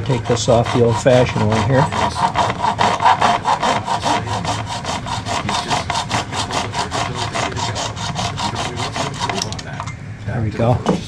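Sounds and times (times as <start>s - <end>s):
hand saw cutting: 0.0s - 9.6s.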